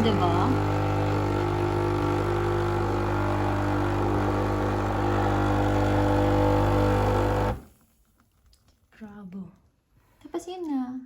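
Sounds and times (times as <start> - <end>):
coffee machine pump buzzing: 0.0 - 7.7.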